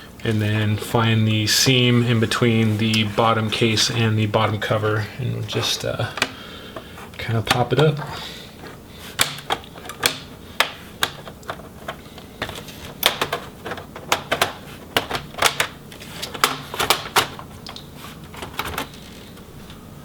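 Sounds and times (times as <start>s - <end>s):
plastic clips snapping loose: 8.6s - 19.0s.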